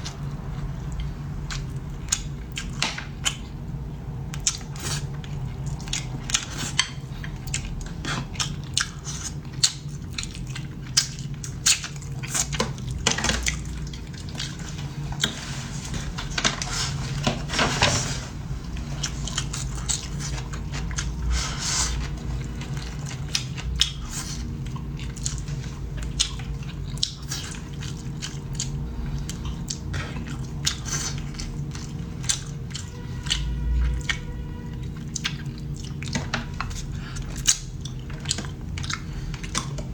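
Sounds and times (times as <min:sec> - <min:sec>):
person chewing food: 0:00.0 - 0:39.9
steady low hum: 0:00.0 - 0:39.9.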